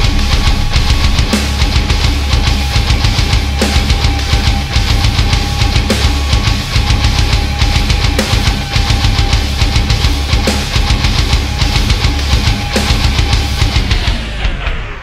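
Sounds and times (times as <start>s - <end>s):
heavy metal music: 0.0s - 15.0s.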